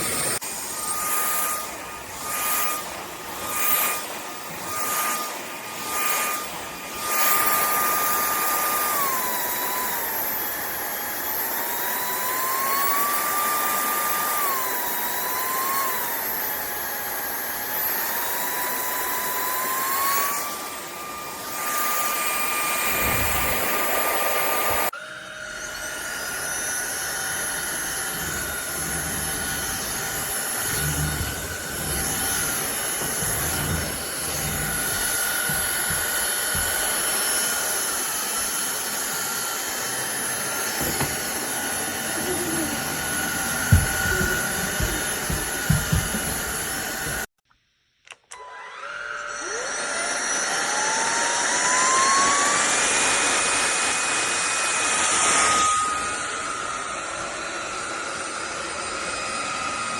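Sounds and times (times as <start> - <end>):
vacuum cleaner motor whine: 0.0 - 47.3, 48.3 - 59.9
dull knocks: 43.6 - 47.2.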